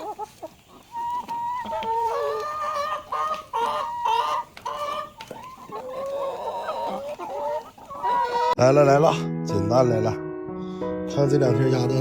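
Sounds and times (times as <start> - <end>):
chickens clucking: 0.0 - 8.6.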